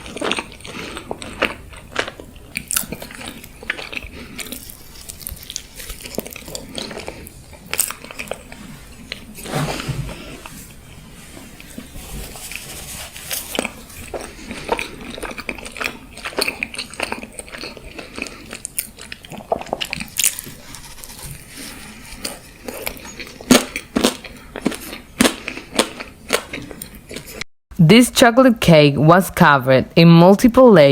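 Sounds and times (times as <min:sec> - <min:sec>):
crisp bites and chewing: 0:00.0 - 0:09.3, 0:13.3 - 0:27.4.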